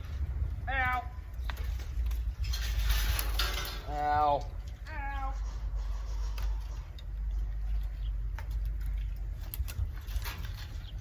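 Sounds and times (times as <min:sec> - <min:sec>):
crackles: 0:00.0 - 0:11.0
brush rustling and snapping: 0:01.4 - 0:04.0, 0:06.2 - 0:11.0.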